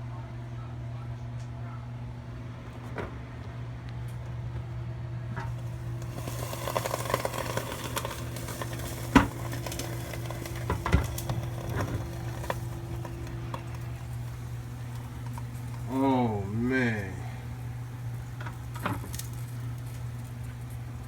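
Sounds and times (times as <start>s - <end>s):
countertop grill humming: 0.0s - 21.0s
ribs sizzling and crackling: 5.4s - 21.0s.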